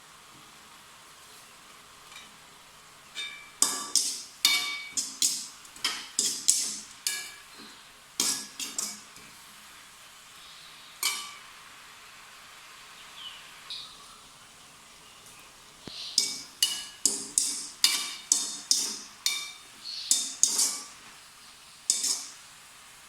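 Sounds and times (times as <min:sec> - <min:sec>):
metal utensils clinking on pan: 0:03.1 - 0:09.3, 0:11.0 - 0:11.5, 0:16.0 - 0:21.1, 0:21.9 - 0:22.4.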